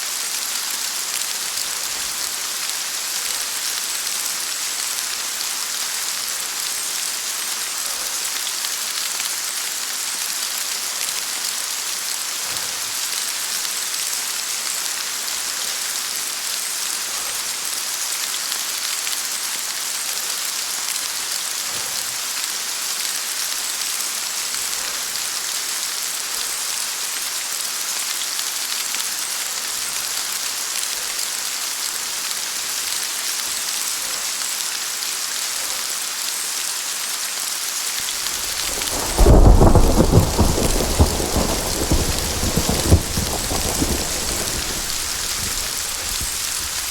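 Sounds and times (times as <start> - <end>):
heavy rain falling: 0.0 - 46.9.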